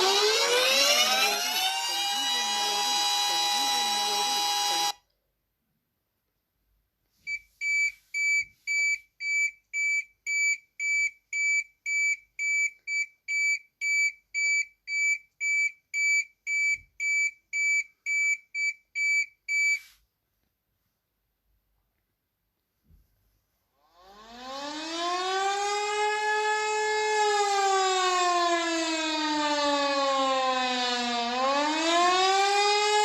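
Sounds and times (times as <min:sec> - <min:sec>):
alarm beeping: 0:00.0 - 0:05.0.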